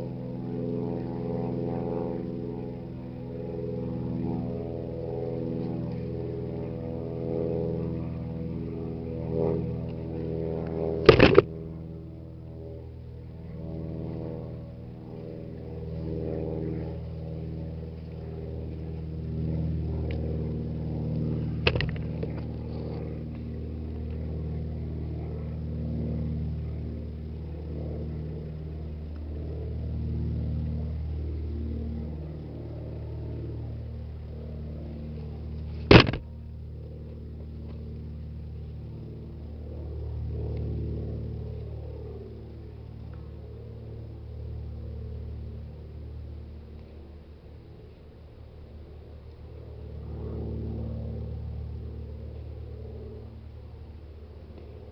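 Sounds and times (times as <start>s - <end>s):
engine drone: 0.0s - 54.9s
sharp knocks: 11.1s - 11.5s, 21.7s - 22.0s, 35.9s - 36.3s.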